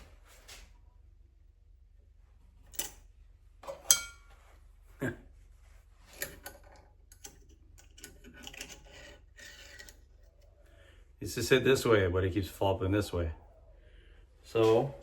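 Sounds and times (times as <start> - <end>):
metal parts clicking and clinking: 2.7 - 3.0, 6.1 - 10.2.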